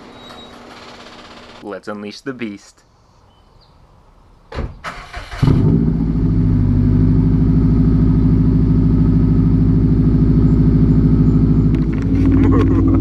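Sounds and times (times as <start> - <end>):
car engine idling loudly: 6.1 - 13.0.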